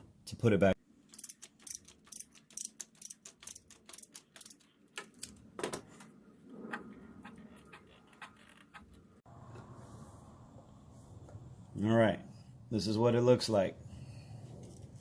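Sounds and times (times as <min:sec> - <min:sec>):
ratchet wrench clicking: 0:01.1 - 0:04.6.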